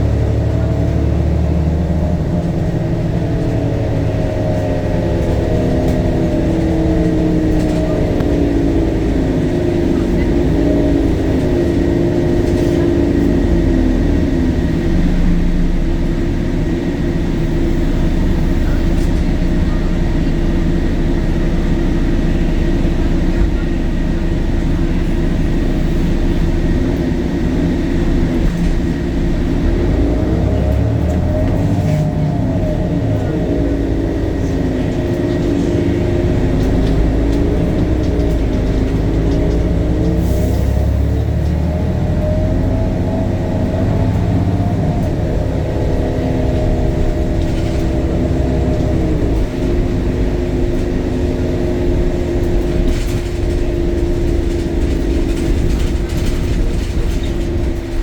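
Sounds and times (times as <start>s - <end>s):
bus diesel engine running: 0.0s - 58.0s.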